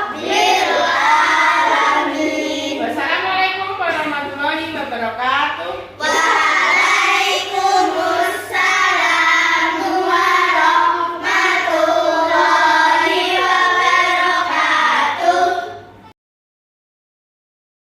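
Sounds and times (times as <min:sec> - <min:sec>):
children singing in unison: 0:00.0 - 0:02.8, 0:06.0 - 0:16.0.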